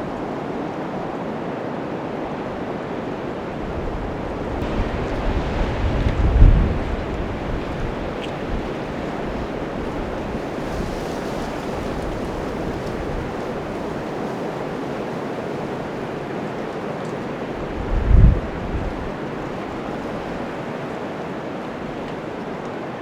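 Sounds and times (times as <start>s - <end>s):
storm wind blowing: 0.0s - 23.0s
wind gust buffeting microphone: 2.3s - 23.0s.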